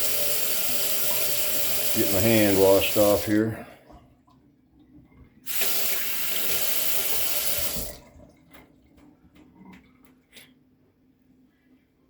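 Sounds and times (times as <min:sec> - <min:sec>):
faucet running on hands: 0:00.0 - 0:03.5, 0:05.4 - 0:08.1.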